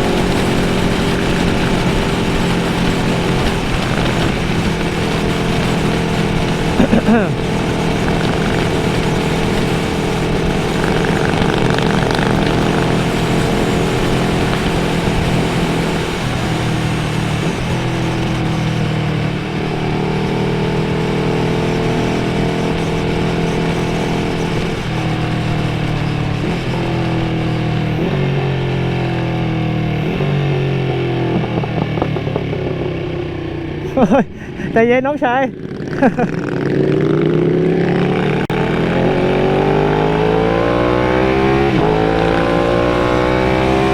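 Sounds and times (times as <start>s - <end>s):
wind rush: 0.0s - 30.5s
motorcycle engine: 0.0s - 43.9s.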